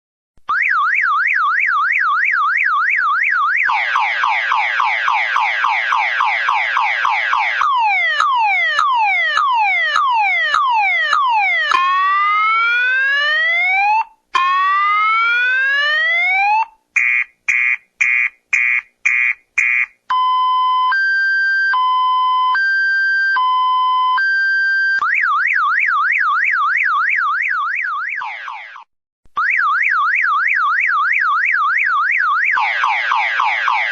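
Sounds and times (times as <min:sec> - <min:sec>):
electronic police siren: 0:00.5 - 0:33.9.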